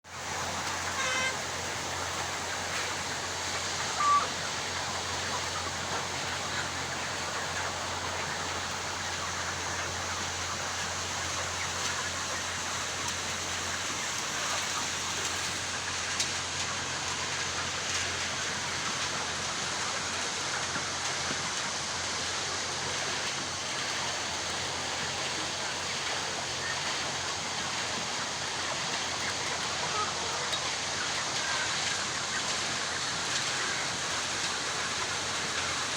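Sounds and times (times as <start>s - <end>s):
chickens clucking: 0.2s - 35.9s
sharp chicken call: 0.9s - 1.4s, 3.9s - 4.3s.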